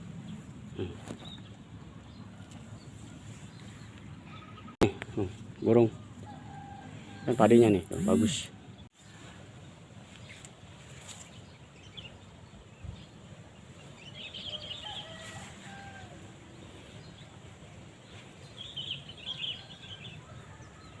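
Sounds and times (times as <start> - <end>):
low outdoor noise: 0.0 - 21.0
small birds chirping: 0.2 - 6.0, 16.6 - 21.0.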